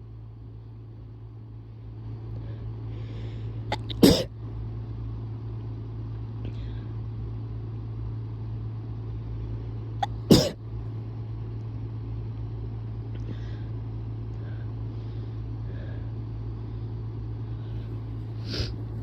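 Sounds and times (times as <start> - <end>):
steady low hum: 0.0 - 19.0
faint breathing: 2.2 - 3.7, 6.4 - 7.0, 13.1 - 19.0
person sneezing: 3.7 - 4.3, 10.0 - 10.6.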